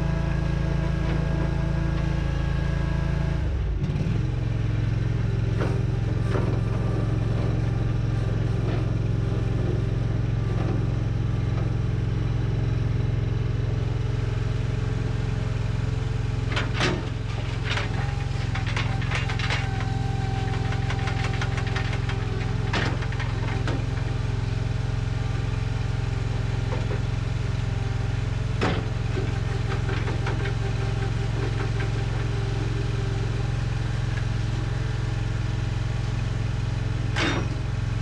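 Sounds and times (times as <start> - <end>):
skid steer engine running: 0.0 - 38.0.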